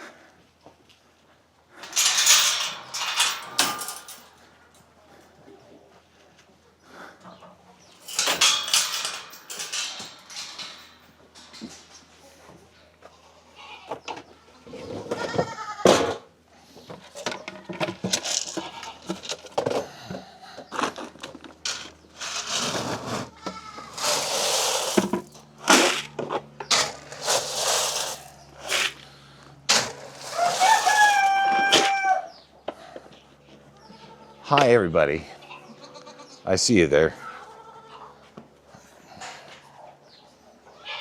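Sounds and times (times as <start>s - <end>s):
chickens clucking and squawking: 5.0s - 8.1s, 29.8s - 34.4s, 37.1s - 41.0s
rooster crowing: 30.3s - 32.4s.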